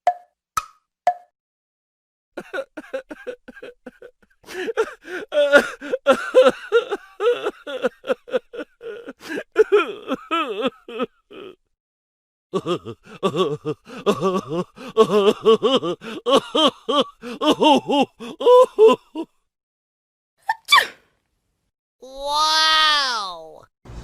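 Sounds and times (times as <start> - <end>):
wood-block tick: 0.1 - 1.3
comedic laughter: 2.4 - 11.6, 12.6 - 19.3.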